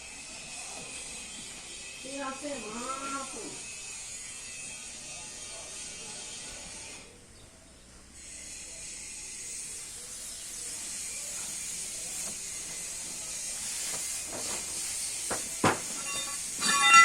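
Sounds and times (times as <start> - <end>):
compressed air hissing: 8.1 - 17.0.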